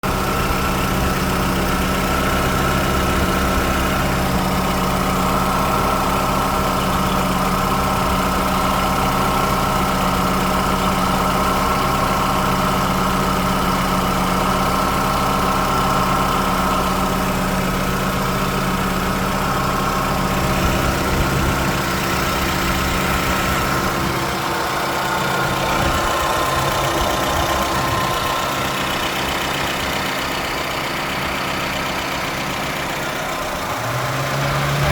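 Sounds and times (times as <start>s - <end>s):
car engine idling: 0.0s - 34.9s.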